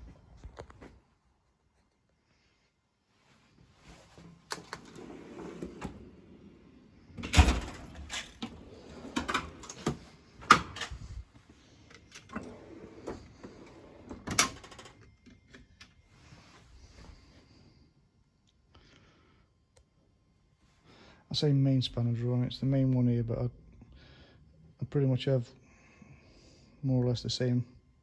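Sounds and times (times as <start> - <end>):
metal drawers sliding and shutting: 4.2 - 11.2, 11.9 - 14.9.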